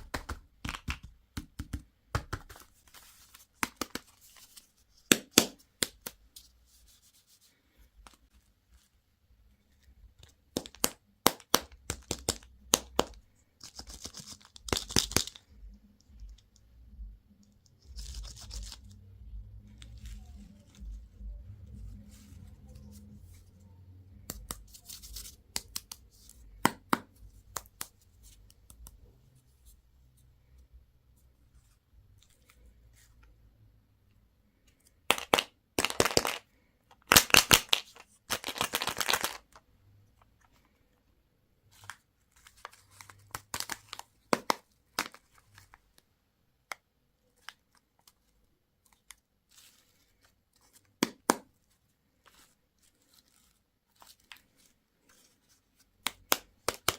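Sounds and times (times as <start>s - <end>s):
packaging tearing and crinkling: 37.1s - 39.4s.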